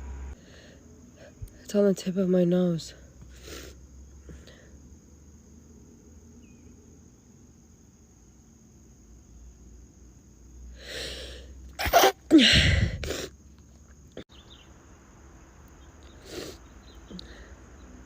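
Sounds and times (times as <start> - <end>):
breath out: 10.8 - 11.6, 12.3 - 13.3, 16.2 - 17.6
woman inhaling: 10.8 - 11.6
woman sneezing: 11.8 - 13.3.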